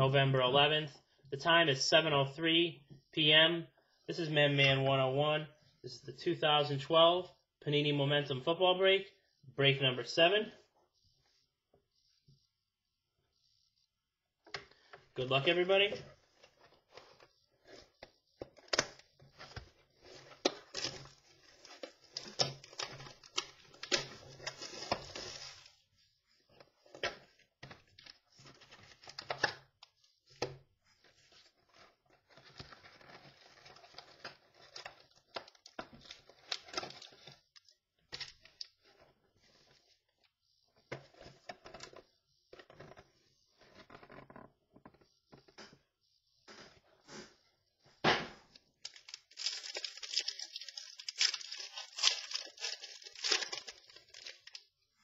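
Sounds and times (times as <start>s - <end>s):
wrapping tearing and crinkling: 18.6s - 25.7s, 31.7s - 38.9s, 48.8s - 54.8s.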